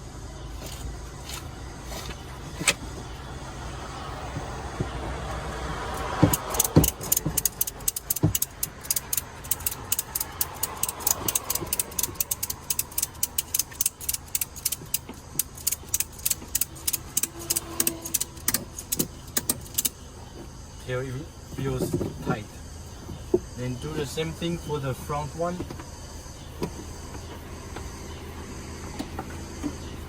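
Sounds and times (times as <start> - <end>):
ratchet strap clicking: 5.9 - 20.0.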